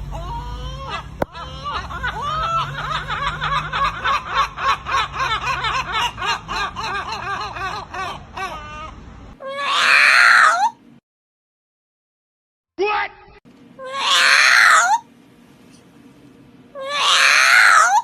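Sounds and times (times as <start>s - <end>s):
bird laughing call: 0.1s - 9.0s.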